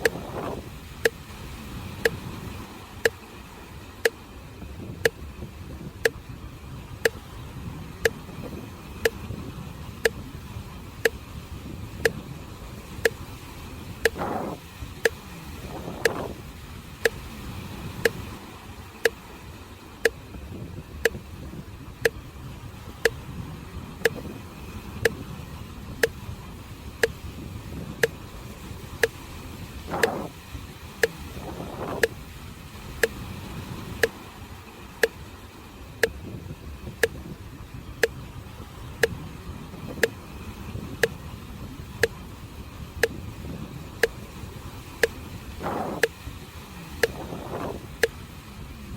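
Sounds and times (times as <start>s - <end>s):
sea waves on the shore: 0.0s - 48.9s
sharp ticking: 14.0s - 15.2s, 29.9s - 30.3s.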